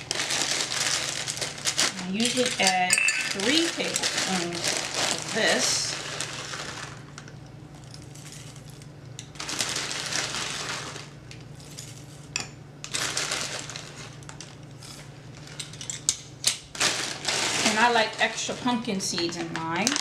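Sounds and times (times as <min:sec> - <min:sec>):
granola pouring into bowl: 0:03.3 - 0:07.2, 0:09.4 - 0:11.2.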